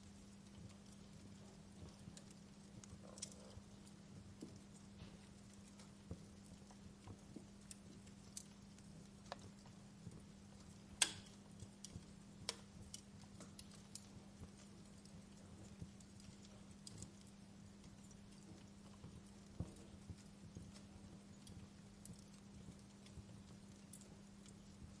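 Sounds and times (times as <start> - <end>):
low steady hum: 0.0 - 25.0
wood fire crackling: 0.0 - 25.0.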